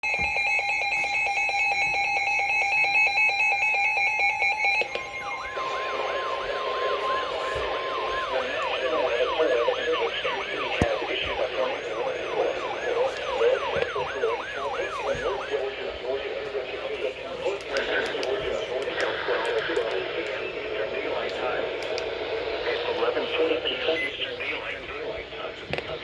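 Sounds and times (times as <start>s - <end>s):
falling siren-like sweep: 0.3s - 15.7s.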